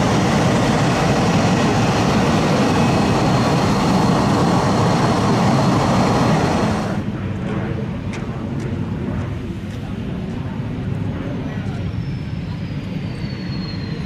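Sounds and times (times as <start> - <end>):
high engine whine: 0.0 - 14.0
jet engine rush: 0.0 - 14.0.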